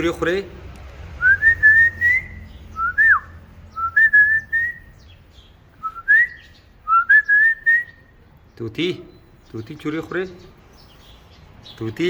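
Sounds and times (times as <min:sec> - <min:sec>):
person whistling: 0:01.2 - 0:04.8, 0:05.8 - 0:08.0.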